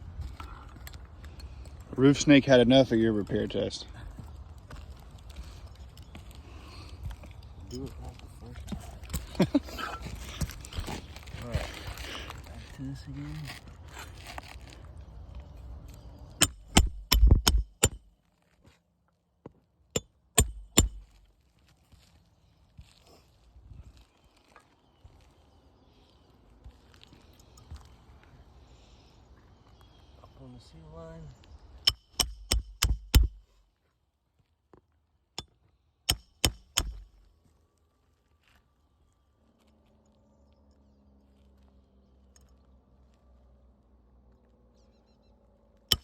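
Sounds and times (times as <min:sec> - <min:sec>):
hammer striking metal: 0:16.4 - 0:18.0, 0:20.0 - 0:21.1, 0:31.8 - 0:33.4, 0:36.1 - 0:37.1.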